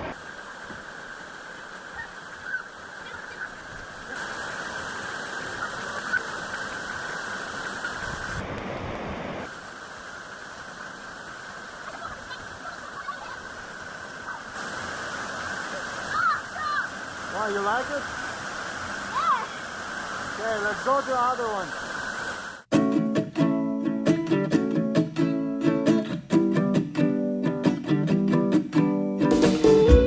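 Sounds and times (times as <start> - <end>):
waterfall pouring into pool: 0.1 - 8.5, 9.4 - 22.7.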